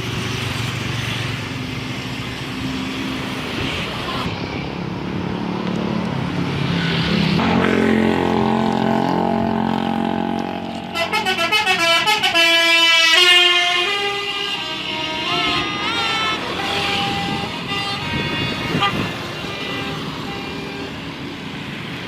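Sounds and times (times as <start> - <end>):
bus engine running: 0.0 - 22.0
multi-tone musical horn: 9.8 - 21.0.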